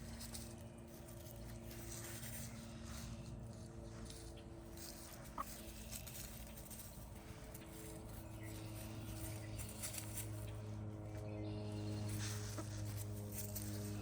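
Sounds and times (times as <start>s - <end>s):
chickens scratching in leaves: 0.0s - 14.0s
chicken chirp: 5.1s - 6.1s.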